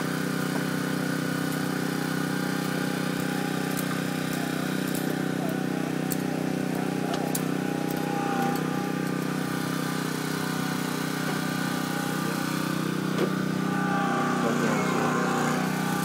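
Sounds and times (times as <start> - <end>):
vehicle engine idling: 0.0 - 16.0.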